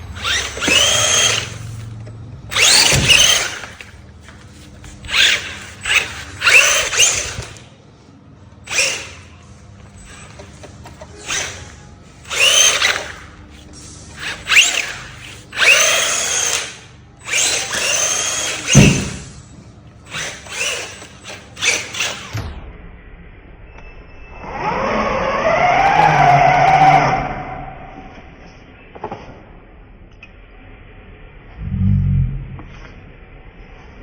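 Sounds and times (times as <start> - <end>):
small electric motor whirring: 0.1 - 7.6, 8.7 - 9.4, 10.0 - 19.4, 20.1 - 22.3.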